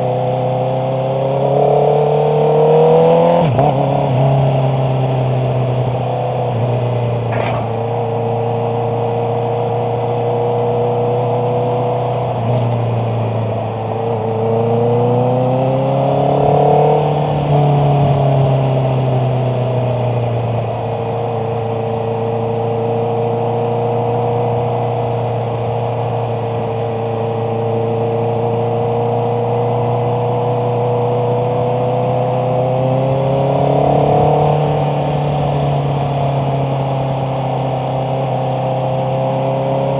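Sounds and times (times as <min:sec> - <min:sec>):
motorcycle engine revving: 0:00.7 - 0:12.7.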